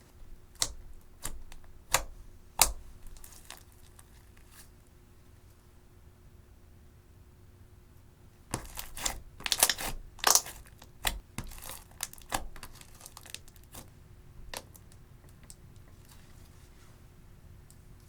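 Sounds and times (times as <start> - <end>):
slime crackling pops: 8.5 - 12.8.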